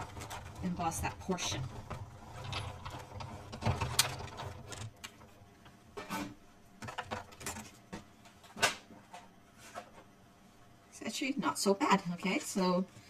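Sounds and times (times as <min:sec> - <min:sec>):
hand-cranked machine grinding rumble: 0:00.0 - 0:04.9.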